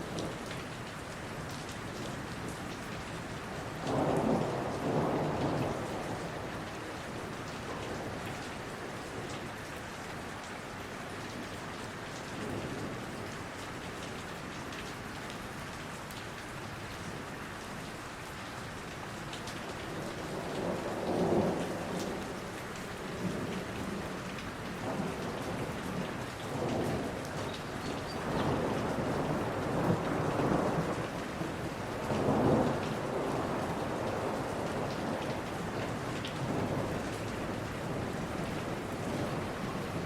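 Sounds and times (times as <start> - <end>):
rain falling in forest: 0.0 - 40.0
thunder rumbling: 24.8 - 40.0.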